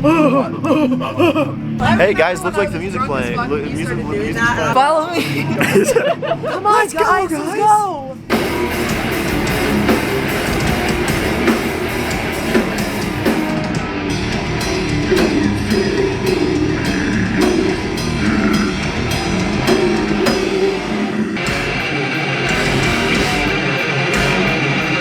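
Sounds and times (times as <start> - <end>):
distorted electric guitars: 8.2 - 25.0
drum kit hits: 8.3 - 25.0.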